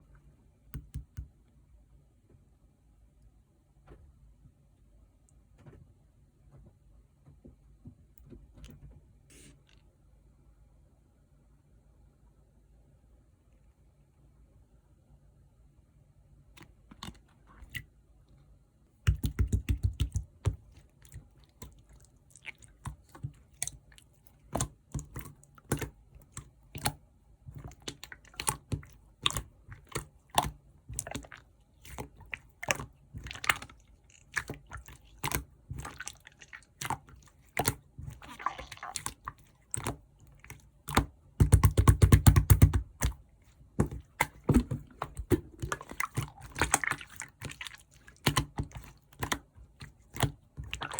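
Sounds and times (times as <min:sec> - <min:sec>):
slime clicking and popping: 0:19.1 - 0:20.6, 0:37.6 - 0:43.2
slime crackling: 0:19.1 - 0:43.2.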